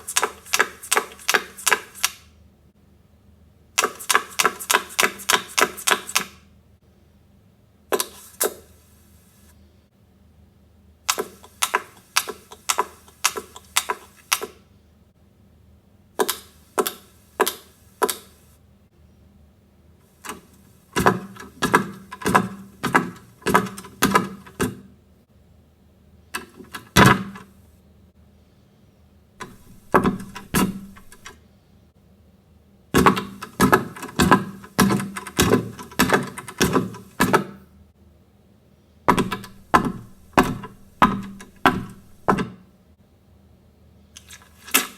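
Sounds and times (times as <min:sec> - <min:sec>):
sharp tapping bursts: 0:29.4 - 0:31.3, 0:39.1 - 0:42.5.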